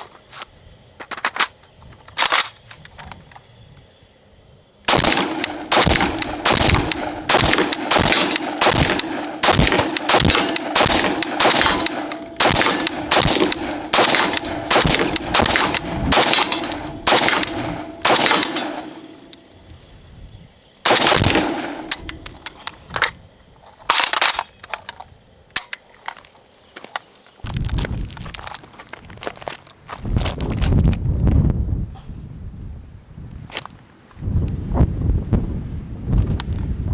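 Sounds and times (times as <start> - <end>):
rifle shots: 4.9 - 19.4, 20.8 - 22.5.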